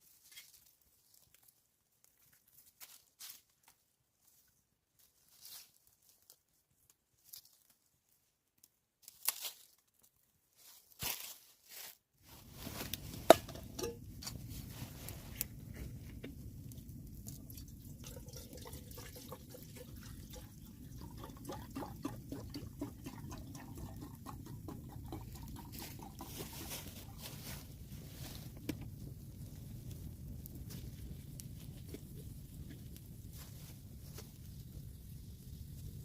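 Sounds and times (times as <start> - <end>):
low water wash: 12.4 - 30.3
water drips and clicks: 16.2 - 27.1.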